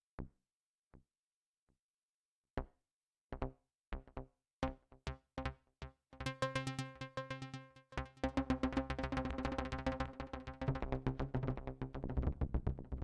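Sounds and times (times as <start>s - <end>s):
plucky synthesizer notes: 6.2s - 12.1s.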